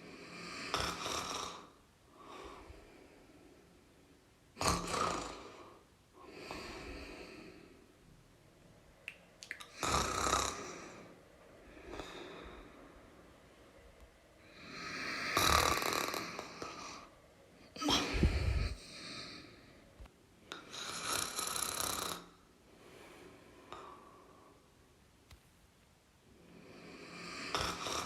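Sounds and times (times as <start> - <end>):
person snoring: 0.0 - 2.8, 4.6 - 7.7, 9.7 - 11.2, 14.5 - 17.1, 17.8 - 19.6, 20.7 - 22.4, 26.7 - 28.0.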